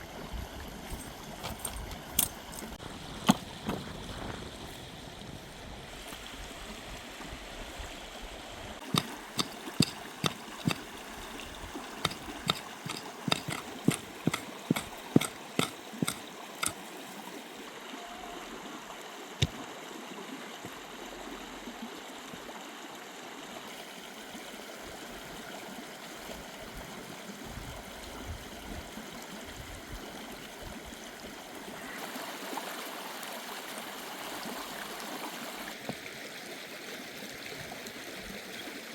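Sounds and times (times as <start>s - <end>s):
running water rushing: 0.0s - 38.9s
sharp knocks or clicks: 12.0s - 16.8s.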